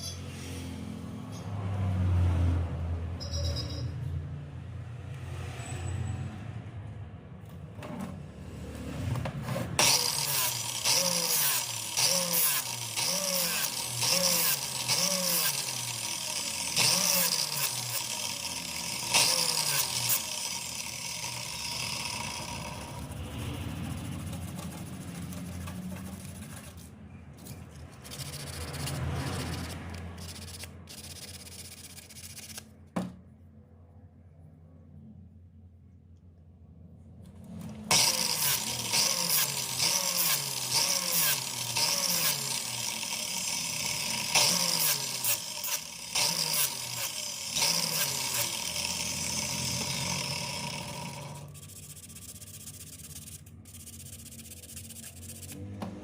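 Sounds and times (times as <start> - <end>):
motorcycle engine revving: 8.2 - 26.9, 27.9 - 30.6, 55.2 - 56.0.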